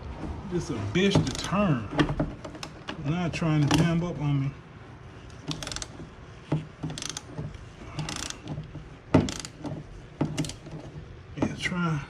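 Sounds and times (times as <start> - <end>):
ratchet wrench clicking: 5.4 - 6.0, 6.9 - 7.4, 8.0 - 8.6, 9.2 - 10.7.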